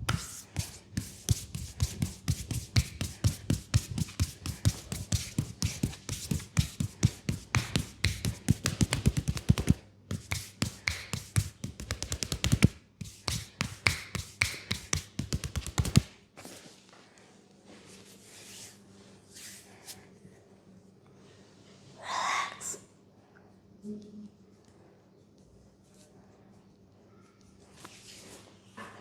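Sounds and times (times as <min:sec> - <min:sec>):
hands slapping on a leg: 0:00.0 - 0:16.2
soft rubbing: 0:00.0 - 0:16.8.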